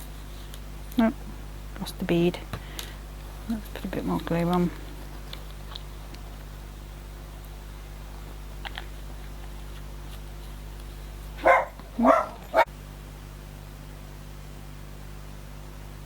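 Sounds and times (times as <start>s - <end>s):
dog barking: 11.4s - 12.7s.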